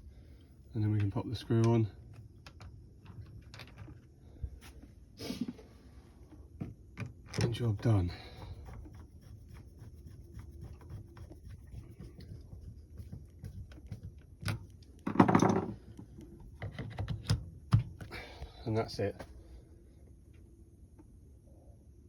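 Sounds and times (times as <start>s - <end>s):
handling clicks and knocks: 0.9s - 4.1s, 12.0s - 18.1s.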